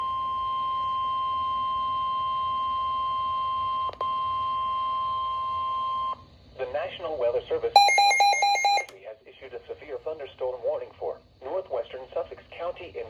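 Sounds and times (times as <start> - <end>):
steady warning alarm beep: 7.8 - 8.9.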